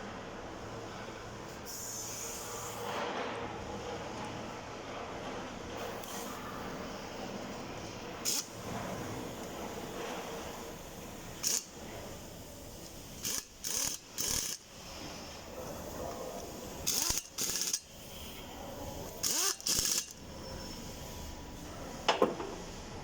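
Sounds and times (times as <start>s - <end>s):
power tool bursts: 13.2s - 14.6s, 16.9s - 17.8s, 19.2s - 20.2s.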